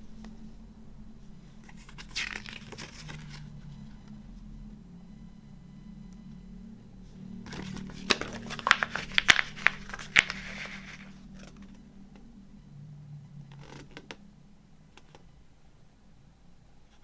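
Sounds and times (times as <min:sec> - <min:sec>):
packaging clicks and crinkles: 0:01.7 - 0:03.5, 0:07.5 - 0:11.8.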